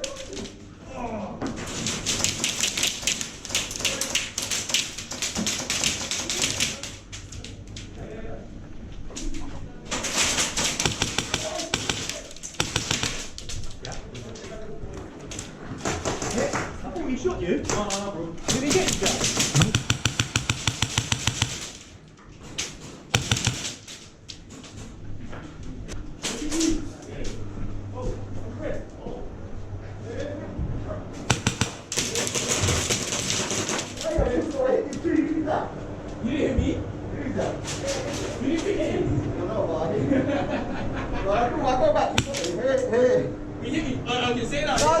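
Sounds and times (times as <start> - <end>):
airsoft guns firing: 9.9 - 13.4, 18.8 - 21.8, 23.2 - 24.0, 31.3 - 33.8, 42.2 - 42.6.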